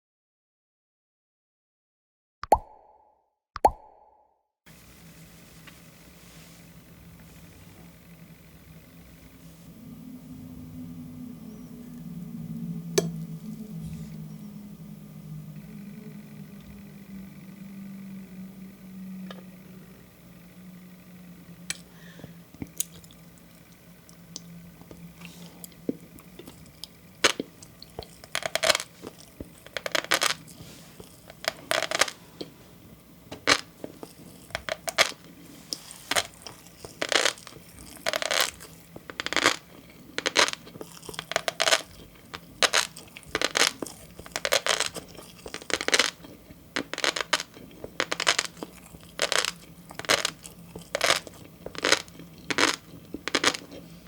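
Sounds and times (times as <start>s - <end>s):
fish roe popping while chewing: 35.8s - 53.7s.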